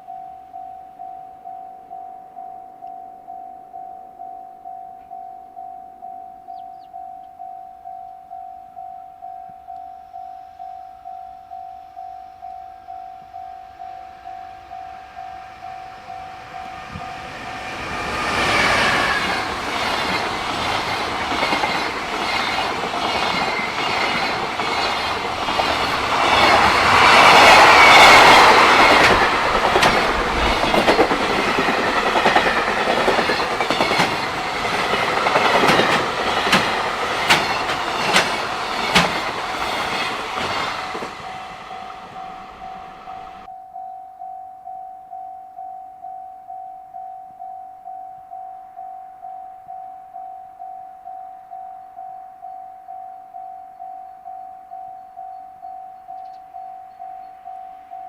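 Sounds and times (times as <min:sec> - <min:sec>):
freight train passing: 0:12.8 - 0:43.5
wheels clicking over rail joints: 0:16.8 - 0:43.5.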